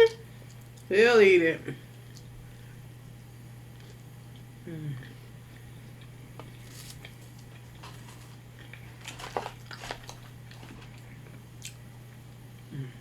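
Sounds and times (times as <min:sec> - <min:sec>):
steady low hum: 0:00.0 - 0:13.0
person chewing food: 0:06.0 - 0:11.9.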